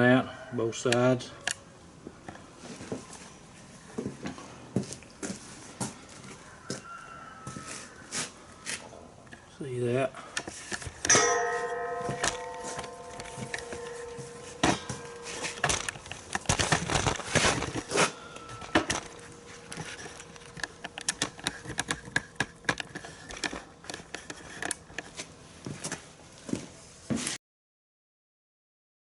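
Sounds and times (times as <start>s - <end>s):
hammer striking steel tube: 11.0s - 16.3s.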